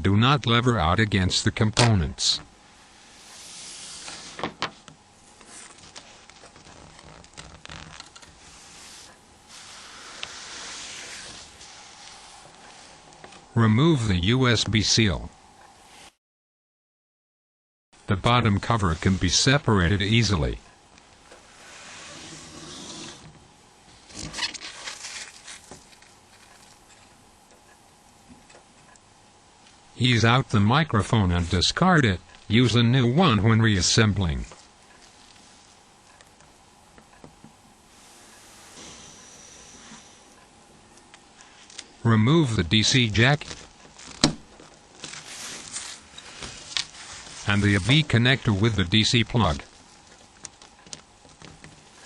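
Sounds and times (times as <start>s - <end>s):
steady hiss: 0.0s - 16.2s, 18.0s - 52.0s
plastic parts scraping rustle: 3.3s - 13.3s, 23.9s - 27.1s, 43.4s - 48.6s.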